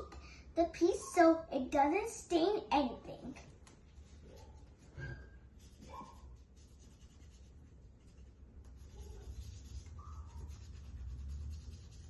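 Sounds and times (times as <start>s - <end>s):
marker scratching on paper: 3.8s - 12.0s.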